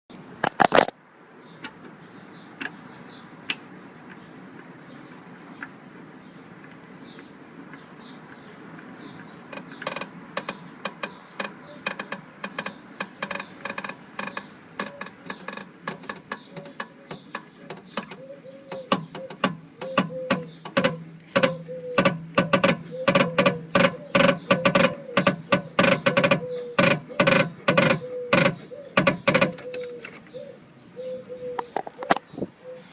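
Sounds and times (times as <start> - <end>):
car rear creaking and knocking: 9.2 - 29.9.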